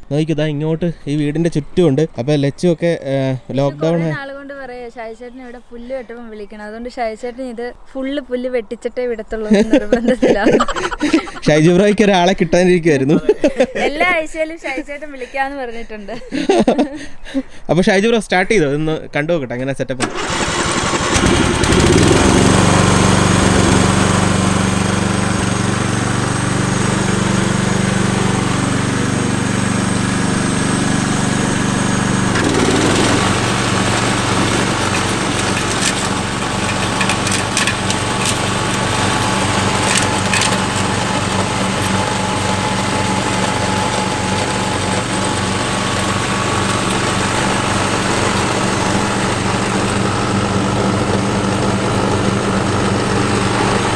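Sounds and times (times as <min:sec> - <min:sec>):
lawn mower engine running: 0:20.0 - 0:53.9.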